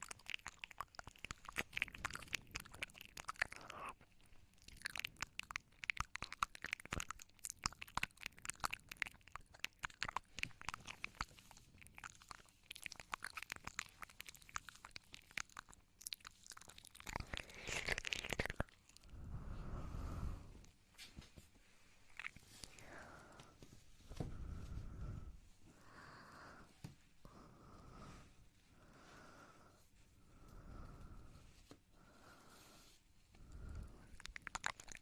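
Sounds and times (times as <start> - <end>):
mouth clicks and smacks: 0.0 - 19.1, 22.1 - 23.1, 33.5 - 35.0.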